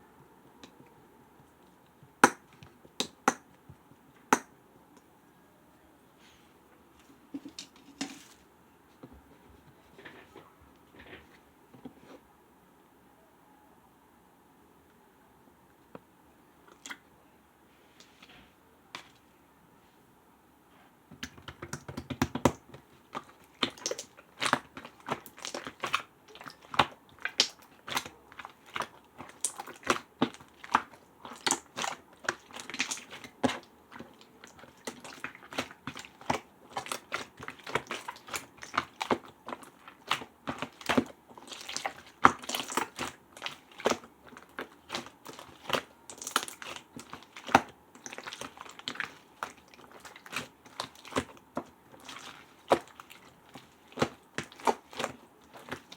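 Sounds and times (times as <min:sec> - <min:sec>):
slime clicking and popping: 0:02.2 - 0:03.5.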